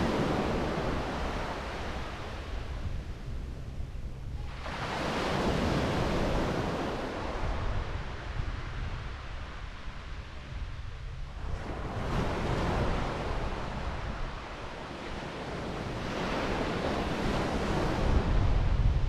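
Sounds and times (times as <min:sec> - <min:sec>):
wind rumble on microphone: 0:00.0 - 0:19.0
surf washing onto sand beach: 0:04.5 - 0:10.6, 0:11.4 - 0:19.0.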